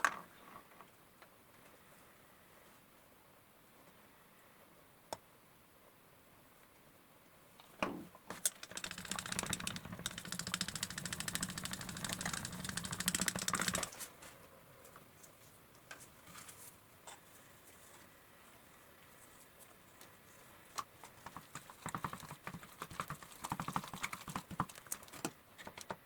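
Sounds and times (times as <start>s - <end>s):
electric tool buzzy rattle: 8.3s - 14.0s
faint clicks: 8.3s - 14.0s.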